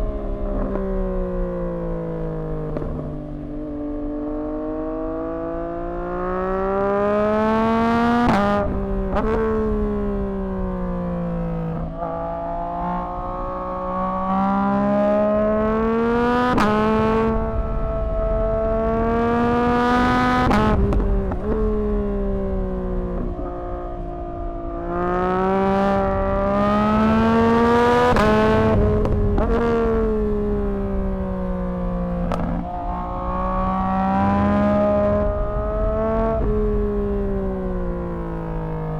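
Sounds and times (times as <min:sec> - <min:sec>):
motorcycle engine revving: 0:00.0 - 0:38.9.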